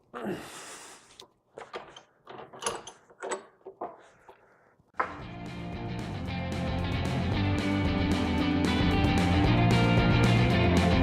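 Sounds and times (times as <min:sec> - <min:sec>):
guitar music: 0:05.3 - 0:11.0.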